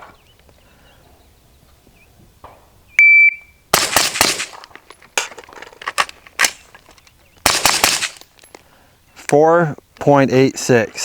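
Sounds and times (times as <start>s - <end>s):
shot timer beep: 3.0s - 3.5s
gunshots: 3.7s - 4.8s, 7.4s - 8.2s.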